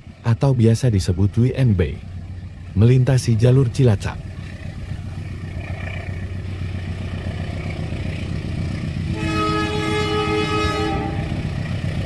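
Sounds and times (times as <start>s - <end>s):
train rumbling: 0.0s - 12.0s
locomotive horn chord: 9.0s - 11.8s.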